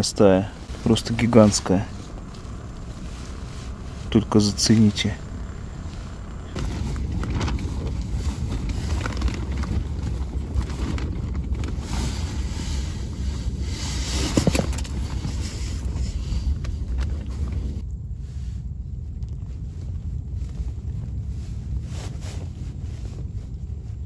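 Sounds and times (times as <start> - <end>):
storm wind buffeting microphone: 0.0 - 24.0.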